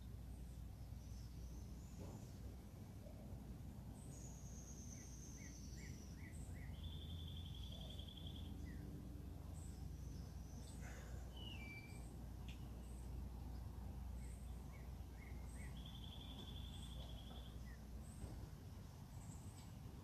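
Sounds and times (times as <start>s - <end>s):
birds chirping: 0.3s - 19.9s
bird trill: 4.1s - 8.8s, 10.0s - 13.0s, 14.2s - 18.2s.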